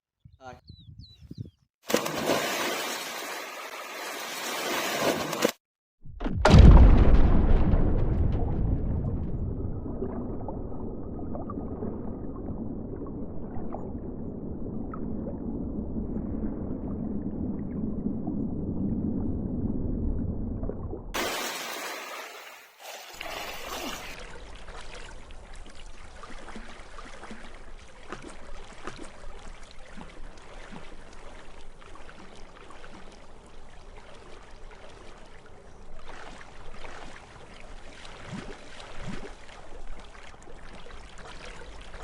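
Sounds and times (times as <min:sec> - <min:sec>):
water sloshing and splashing: 0:01.9 - 0:05.6, 0:20.7 - 0:42.0
deep low rumble: 0:06.5 - 0:21.1.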